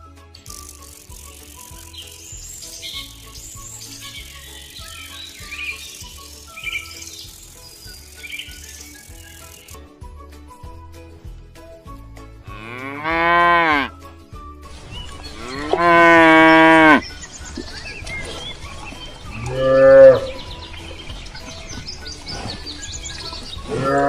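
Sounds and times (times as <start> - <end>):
cattle mooing: 12.5 - 13.9, 15.4 - 17.0, 19.4 - 20.4, 23.7 - 24.0.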